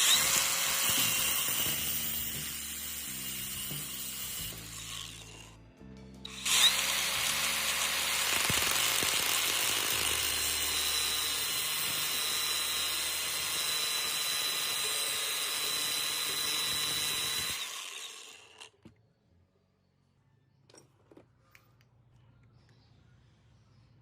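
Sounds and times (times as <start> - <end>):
power tool whining: 0.0 - 5.6, 6.2 - 18.8.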